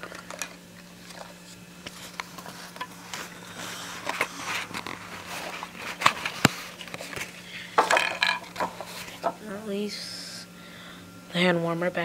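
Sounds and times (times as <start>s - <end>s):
faint steady hum: 0.0s - 12.0s
packaging rustling: 0.1s - 7.4s.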